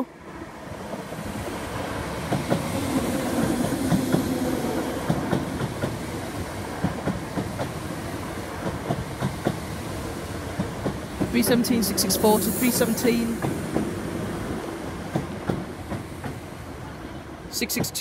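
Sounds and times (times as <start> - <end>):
electric train rumbling past: 0.0 - 18.0.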